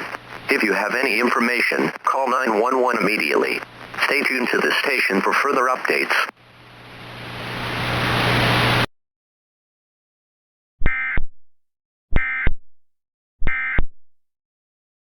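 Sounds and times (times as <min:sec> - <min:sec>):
harsh data bursts: 0:00.0 - 0:06.3
static hiss with low hum: 0:00.0 - 0:08.9.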